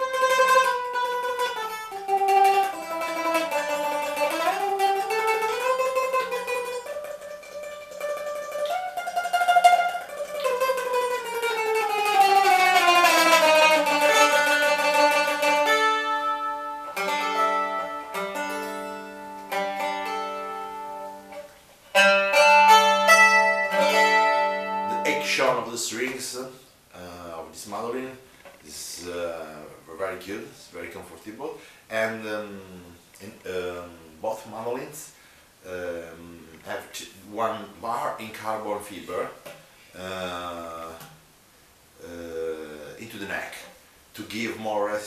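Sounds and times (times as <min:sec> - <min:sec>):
mandolin playing: 0:00.0 - 0:26.4.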